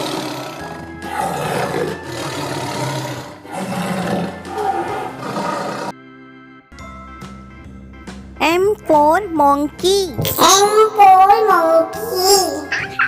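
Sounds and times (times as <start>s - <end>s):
lion roaring: 0.0s - 6.0s.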